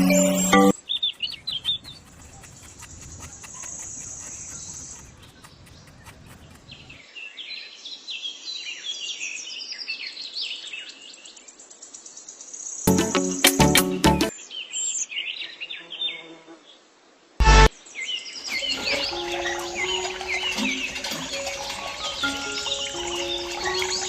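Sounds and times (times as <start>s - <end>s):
small birds chirping rapidly: 0.0s - 7.1s, 17.9s - 24.0s.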